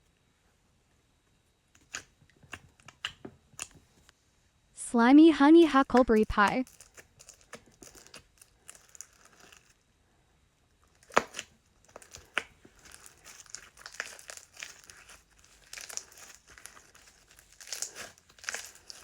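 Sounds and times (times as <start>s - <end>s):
sharp snaps: 1.8s - 3.8s
slime squished by hand: 6.4s - 9.7s, 11.0s - 19.0s.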